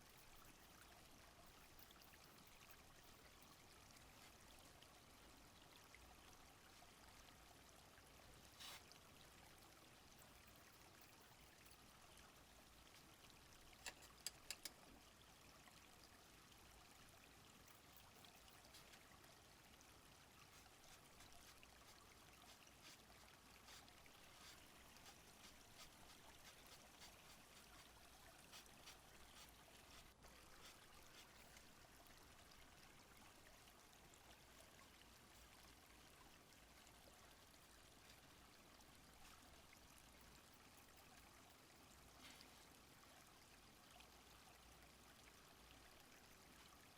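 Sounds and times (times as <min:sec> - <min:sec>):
flowing stream: 0:00.0 - 0:46.9
quick clicks: 0:13.8 - 0:14.8.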